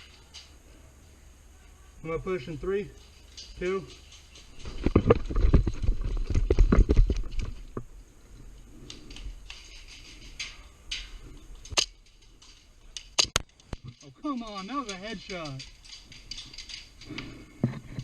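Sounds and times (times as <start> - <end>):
sharp cracks of pellets hitting gear: 10.9 - 13.8.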